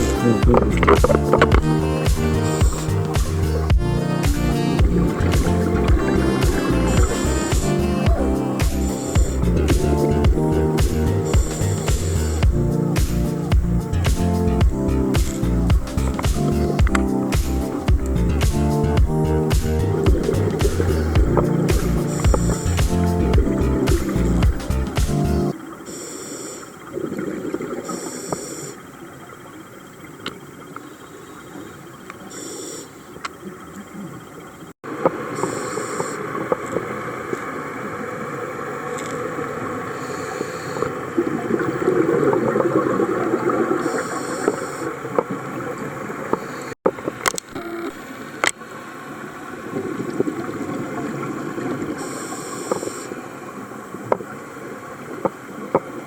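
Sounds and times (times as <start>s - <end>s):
rumbling exhaled bubbles: 0.0s - 1.9s, 4.8s - 8.4s, 19.1s - 24.4s
diver inhaling through regulator: 39.9s - 41.0s, 43.8s - 45.0s, 52.0s - 53.2s.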